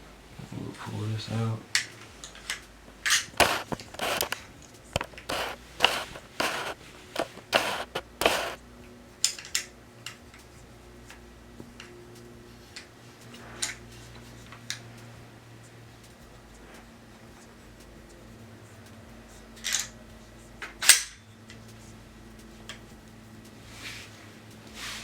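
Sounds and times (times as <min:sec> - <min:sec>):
rifle parts scraping and clattering: 0:02.5 - 0:08.6.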